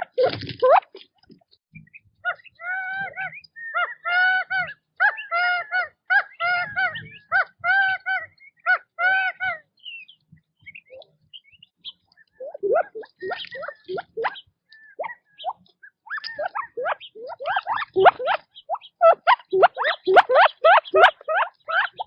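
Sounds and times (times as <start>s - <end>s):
quail calling: 2.2s - 9.7s, 11.8s - 22.0s.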